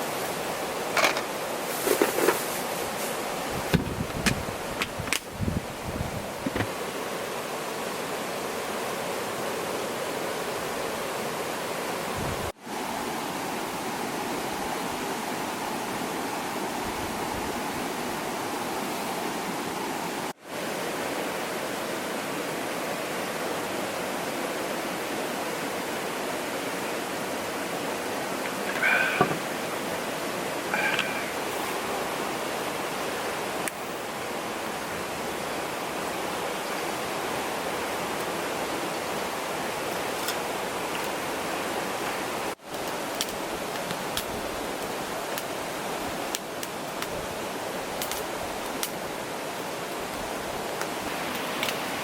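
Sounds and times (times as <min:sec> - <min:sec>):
flowing water rushing: 0:00.0 - 0:52.0.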